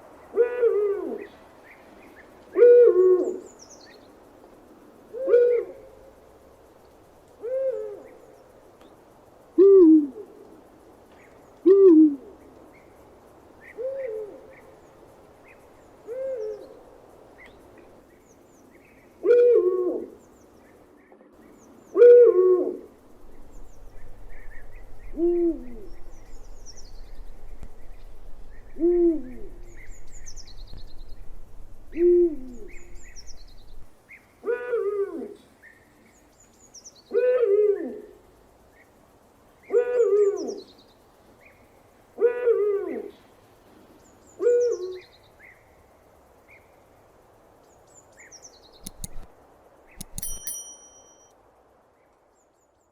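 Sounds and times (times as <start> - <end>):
owl hooting: 0.3 - 1.3, 2.6 - 3.5, 5.1 - 6.0, 7.4 - 8.2, 24.4 - 26.0, 31.9 - 33.2.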